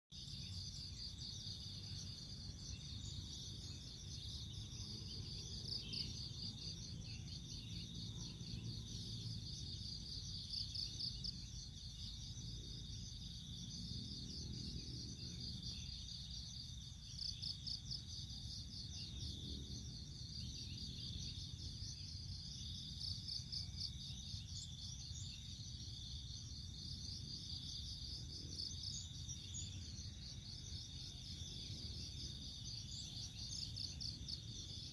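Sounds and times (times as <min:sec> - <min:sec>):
insects chirring: 0:00.2 - 0:34.9.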